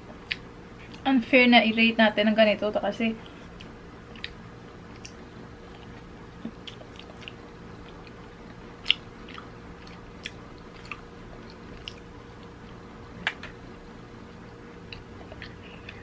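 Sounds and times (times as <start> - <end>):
person chewing hard rice cake: 3.4 - 12.8
mouth clicks and smacks: 3.6 - 8.2.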